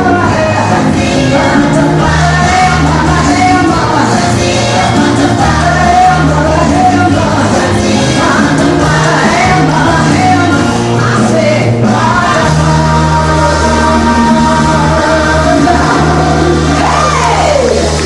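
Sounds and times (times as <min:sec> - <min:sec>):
group singing: 0:00.0 - 0:18.0
steady bass line: 0:00.0 - 0:18.0.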